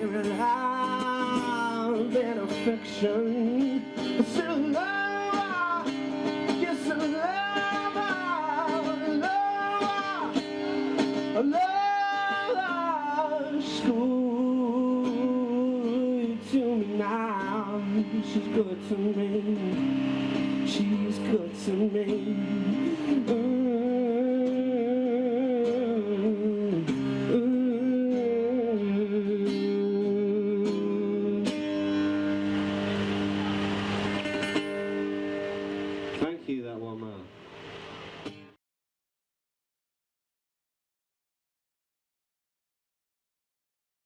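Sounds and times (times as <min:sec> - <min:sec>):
person singing long notes: 0:00.0 - 0:10.4, 0:11.4 - 0:20.0, 0:20.6 - 0:33.9
acoustic guitar: 0:00.0 - 0:38.6.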